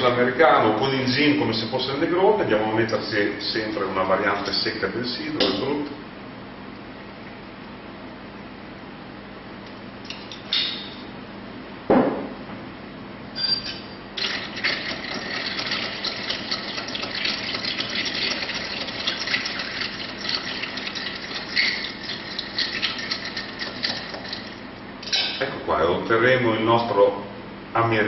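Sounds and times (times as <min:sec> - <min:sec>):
loud thump: 0:11.9 - 0:12.4
cider fizzing over ice: 0:14.2 - 0:24.7.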